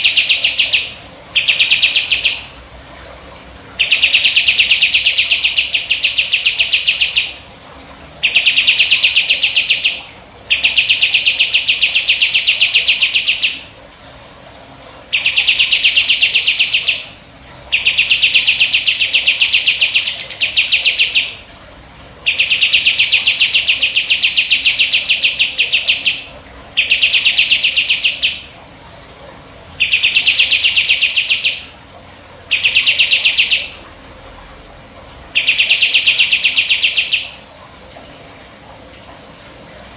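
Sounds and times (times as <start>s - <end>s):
songbird trilling: 0.0s - 2.5s, 3.8s - 7.4s, 8.2s - 13.6s, 15.2s - 17.1s, 17.7s - 21.4s, 22.3s - 28.5s, 29.8s - 31.7s, 32.5s - 33.8s, 35.4s - 37.4s.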